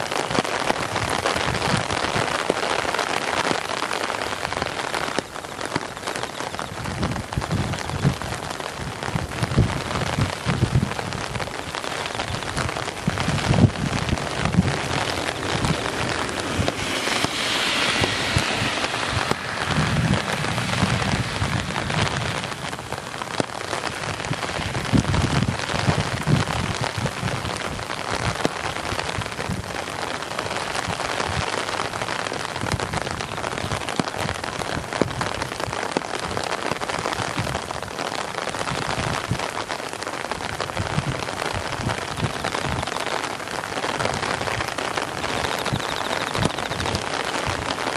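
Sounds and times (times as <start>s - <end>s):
heavy rain pelting: 0.0s - 47.9s
low rumbling: 12.6s - 25.3s.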